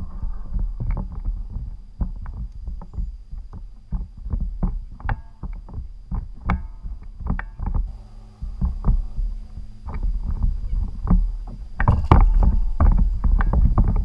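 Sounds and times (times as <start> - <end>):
water knocking and splashing on hull: 0.0 - 14.0.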